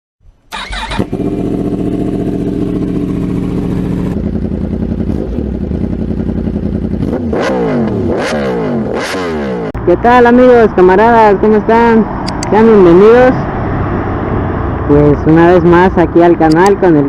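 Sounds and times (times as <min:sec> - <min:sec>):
motorcycle engine idling and revving: 0:00.5 - 0:17.0.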